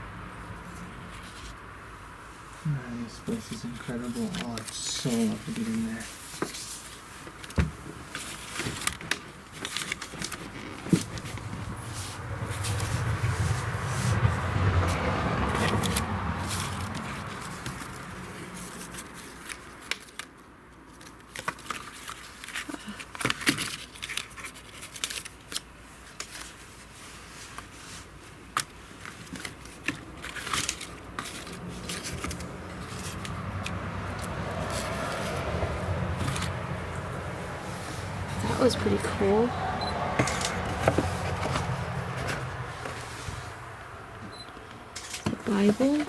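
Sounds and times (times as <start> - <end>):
crinkling: 3.3 - 14.1, 15.5 - 39.2.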